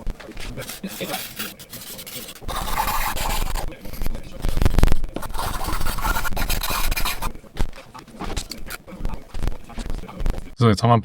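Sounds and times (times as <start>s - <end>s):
hand file rasping: 0.6s - 7.3s.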